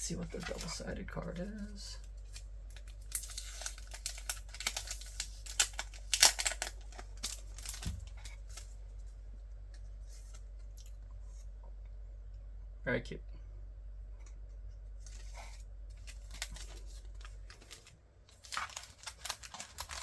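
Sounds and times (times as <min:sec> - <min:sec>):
plastic packaging crinkling and tearing: 0:00.1 - 0:00.9, 0:02.0 - 0:08.8, 0:15.0 - 0:20.0.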